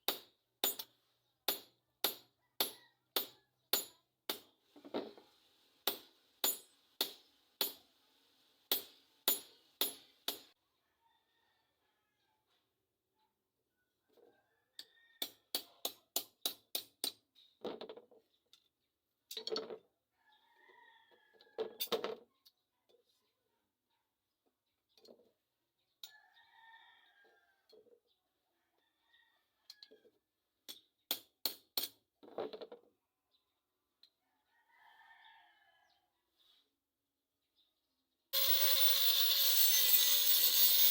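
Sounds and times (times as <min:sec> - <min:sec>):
rooster crowing: 0:10.8 - 0:12.4, 0:26.1 - 0:27.6, 0:34.5 - 0:36.0.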